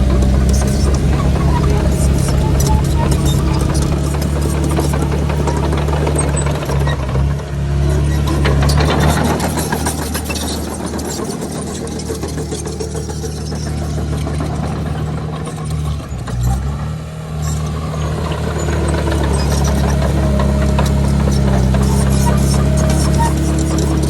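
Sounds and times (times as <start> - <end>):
heavy diesel engine running: 0.0 - 24.0.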